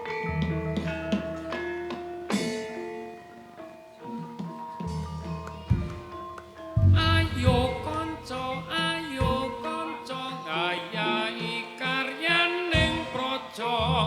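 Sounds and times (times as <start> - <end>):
gamelan music: 0.0 - 14.0
deep drum strokes: 6.8 - 9.6
person singing: 6.8 - 14.0.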